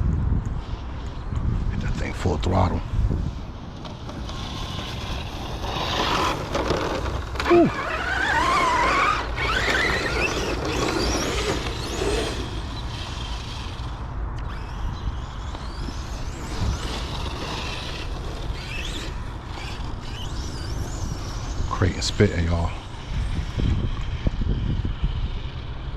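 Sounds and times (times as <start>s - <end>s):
electric motor whine: 3.7s - 25.9s.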